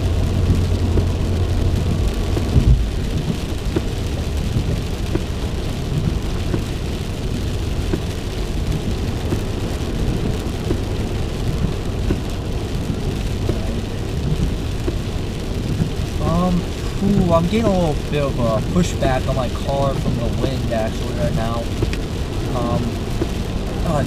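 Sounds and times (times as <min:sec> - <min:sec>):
heavy rain on car: 0:00.0 - 0:24.0
low thump: 0:02.4 - 0:03.9.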